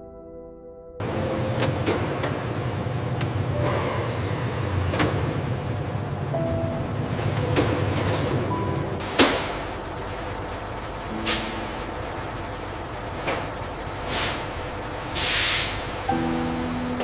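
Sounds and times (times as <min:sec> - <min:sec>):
factory machinery humming: 0:01.0 - 0:17.0
compressed air hissing: 0:11.2 - 0:11.7, 0:14.1 - 0:14.5, 0:15.1 - 0:16.7.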